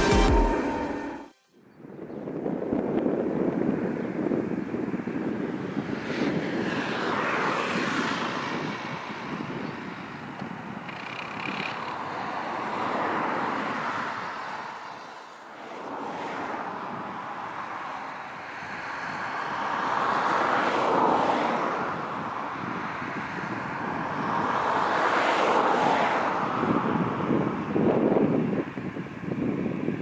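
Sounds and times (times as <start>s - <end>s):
jet engines rushing: 0.0s - 1.3s
wind buffeting microphone: 1.8s - 30.0s.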